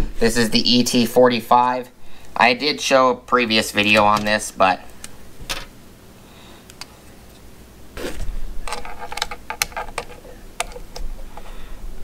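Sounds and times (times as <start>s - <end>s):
small plastic clicks and rattles: 8.7s - 11.1s.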